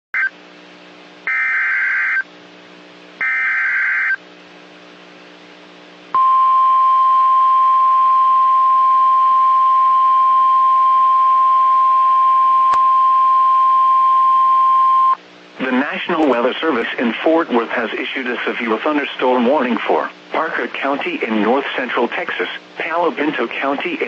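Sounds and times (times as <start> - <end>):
faint hum: 0.2 - 24.0
single-pitch alarm tone: 1.3 - 2.2, 3.2 - 4.2.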